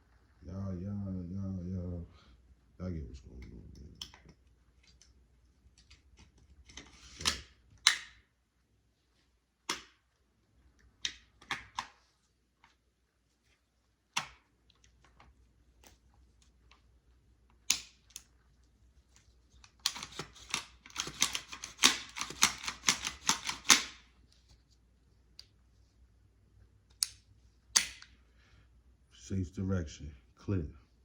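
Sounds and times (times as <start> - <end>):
firearm clicking and rattling: 19.6 - 24.1.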